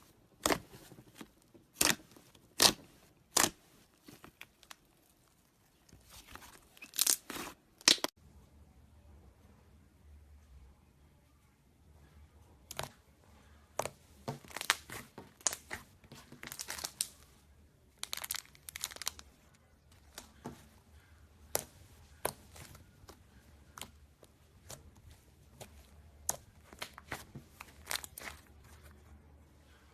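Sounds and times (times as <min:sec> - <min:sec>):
slime crackling and popping: 0:14.4 - 0:17.2, 0:18.0 - 0:19.3, 0:26.2 - 0:28.6.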